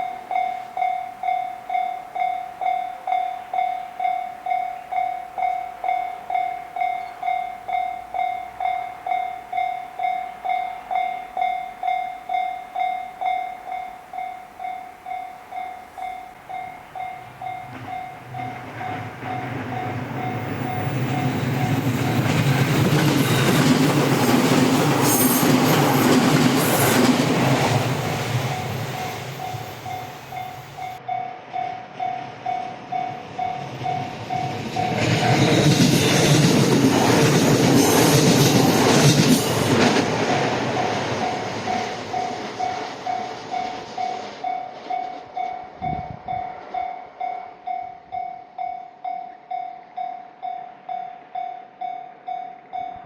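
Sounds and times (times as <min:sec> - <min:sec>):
level crossing alarm ringing: 0:00.0 - 0:36.2
train passing with wheel noise: 0:00.0 - 0:53.0.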